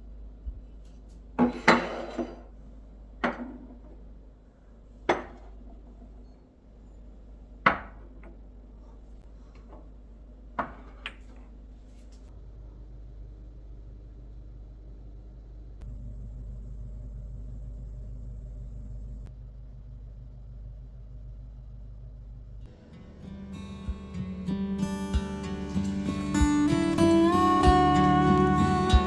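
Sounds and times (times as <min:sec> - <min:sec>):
dishes clinking and knocking: 0:01.4 - 0:02.6, 0:05.1 - 0:05.7.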